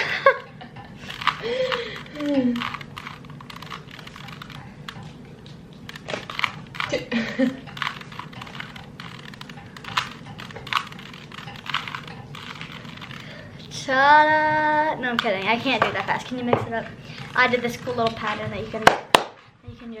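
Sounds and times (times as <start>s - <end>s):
puzzle cube plastic clicking: 1.1s - 5.1s, 5.8s - 6.9s, 7.6s - 13.4s.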